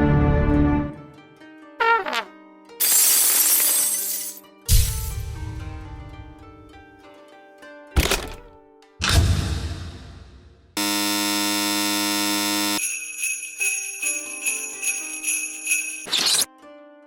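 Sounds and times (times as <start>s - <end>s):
sudden hit sound effect: 4.7s - 6.7s
jingling bell-like sparkle: 12.8s - 16.5s.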